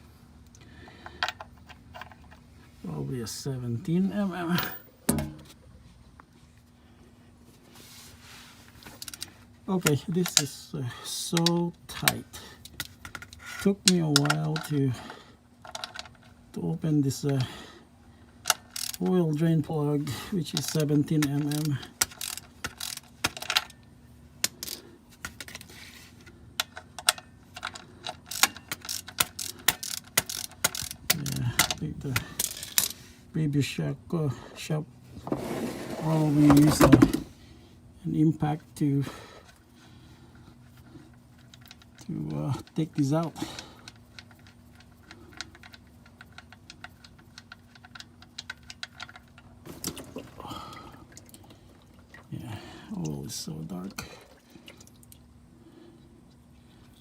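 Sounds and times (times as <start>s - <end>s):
ratchet wrench clicking: 21.5s - 23.6s, 26.6s - 31.2s.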